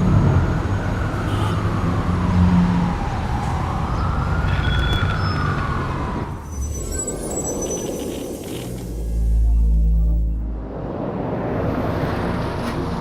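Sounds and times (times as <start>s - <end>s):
road traffic rumble: 0.0s - 13.0s
siren wailing: 0.9s - 7.0s.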